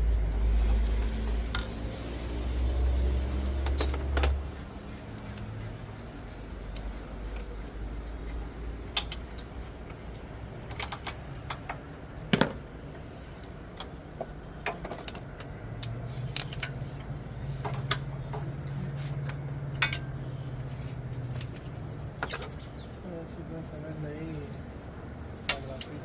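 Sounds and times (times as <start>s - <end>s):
steady low hum: 0.0s - 26.0s
hand tools clinking on metal: 19.2s - 20.2s.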